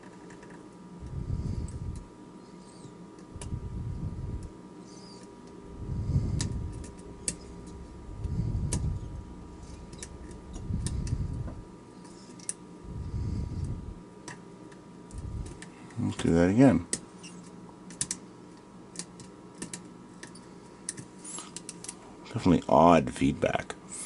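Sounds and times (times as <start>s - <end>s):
faint steady hum: 0.0s - 24.0s
low rushing swell: 5.6s - 12.0s.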